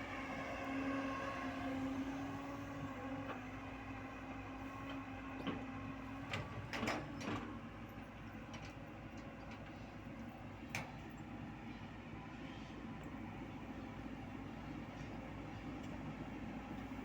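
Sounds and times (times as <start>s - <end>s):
excavator humming: 0.0s - 6.7s.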